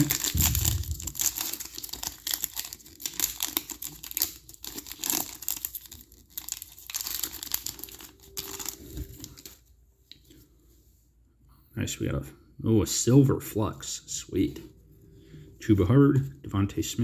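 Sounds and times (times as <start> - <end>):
wrapper tearing and crinkling: 0.0 - 9.6.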